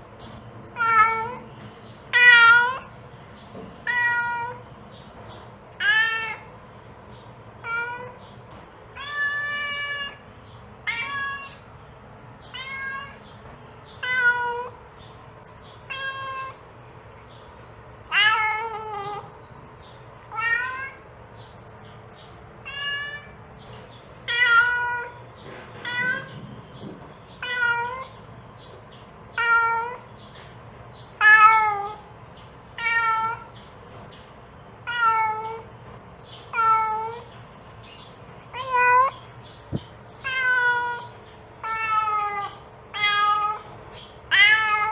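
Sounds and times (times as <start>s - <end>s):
cat meowing: 0.7s - 1.5s, 2.1s - 2.9s, 3.8s - 4.6s, 5.8s - 6.5s, 7.6s - 8.2s, 9.0s - 10.2s, 10.8s - 11.6s, 12.4s - 13.2s, 14.0s - 14.8s, 15.8s - 16.6s, 18.1s - 19.4s, 20.3s - 21.0s, 22.6s - 23.4s, 24.2s - 25.2s, 25.8s - 26.4s, 27.3s - 28.2s, 29.3s - 30.1s, 31.2s - 32.1s, 32.7s - 33.5s, 34.8s - 35.7s, 36.5s - 37.3s, 38.5s - 39.2s, 40.2s - 44.9s.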